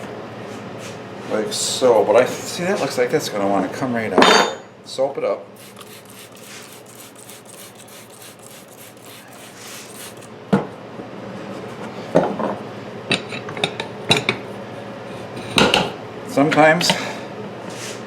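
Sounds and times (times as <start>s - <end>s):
soap rubbing on tire: 5.6s - 10.3s.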